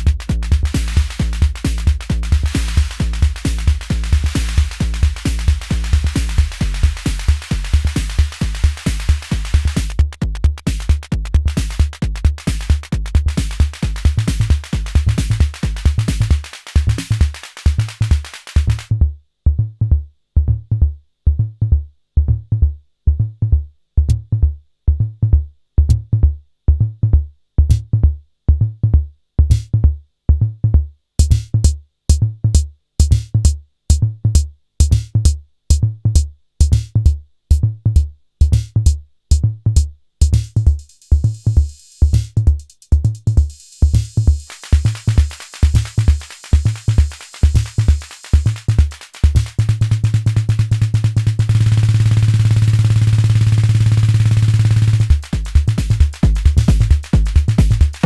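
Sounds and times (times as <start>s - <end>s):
hi-hat ticks: 0.0s - 19.0s, 31.2s - 37.2s, 38.0s - 58.0s
drum machine beat: 0.0s - 58.0s
kick drum: 0.0s - 58.0s.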